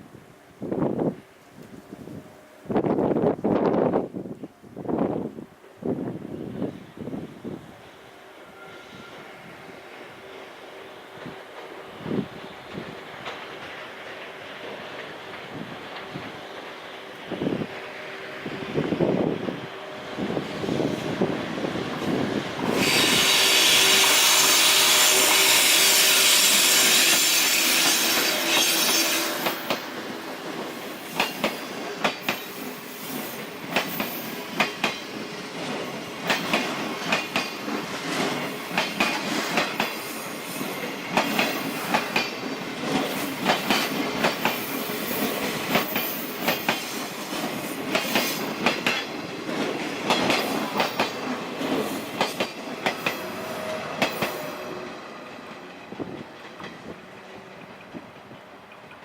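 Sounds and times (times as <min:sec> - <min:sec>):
wind noise: 0:00.0 - 0:10.3, 0:11.1 - 0:13.4, 0:15.2 - 0:16.6, 0:17.2 - 0:24.5, 0:55.8 - 0:57.2
high-pitched hiss and squeal: 0:06.4 - 0:10.9, 0:22.1 - 0:34.5, 0:39.8 - 0:42.3
train wheels clattering over joints: 0:27.0 - 0:53.3.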